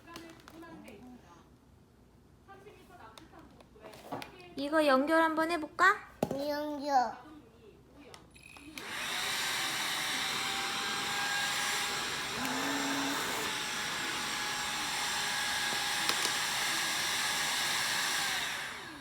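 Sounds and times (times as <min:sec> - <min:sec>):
stick vacuum cleaner running: 0:08.7 - 0:19.0.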